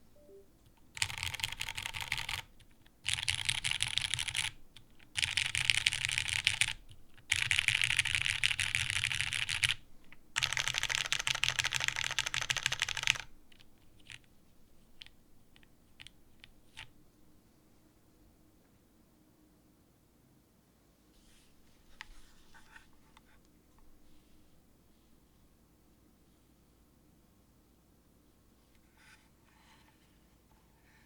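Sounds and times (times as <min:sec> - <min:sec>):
mechanical keyboard typing: 0:00.9 - 0:09.8, 0:10.4 - 0:14.2.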